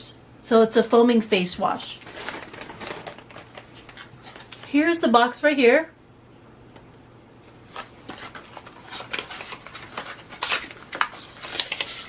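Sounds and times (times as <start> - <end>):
cardboard carton rustling: 2.0 - 4.5, 7.5 - 12.0.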